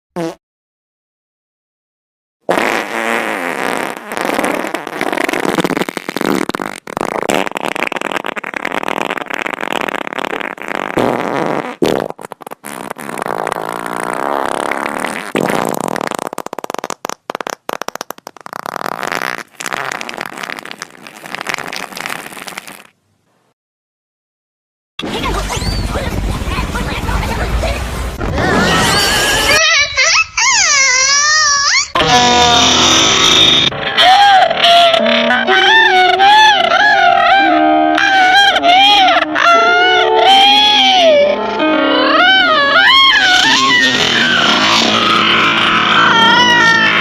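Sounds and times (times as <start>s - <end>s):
fart sound effects: 0.2s - 0.4s, 2.5s - 23.0s, 31.9s - 33.8s, 34.6s - 38.5s, 39.3s - 47.0s.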